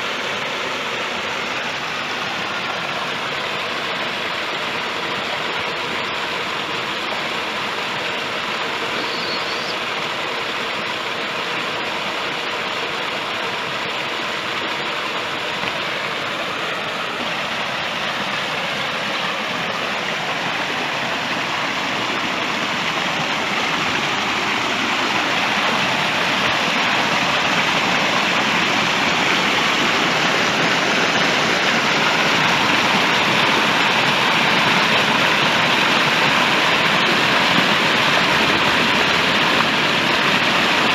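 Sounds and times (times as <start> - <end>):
stream rushing over rocks: 0.0 - 40.9.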